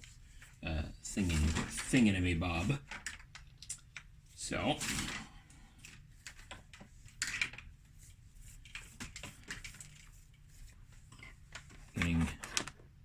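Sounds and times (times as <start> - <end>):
packaging rustling: 11.5 - 12.9.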